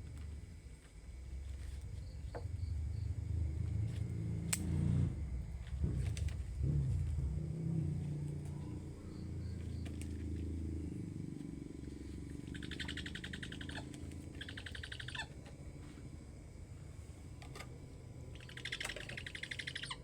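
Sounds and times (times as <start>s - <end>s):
low steady rumble: 0.0s - 20.0s
owl buzzy chattering: 12.4s - 15.4s, 18.4s - 20.0s.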